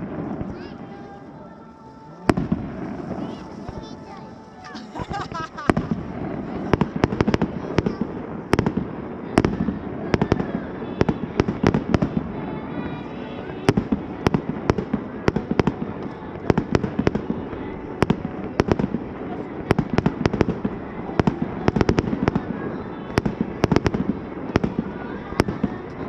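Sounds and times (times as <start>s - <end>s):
fireworks bursting: 0.0s - 26.0s.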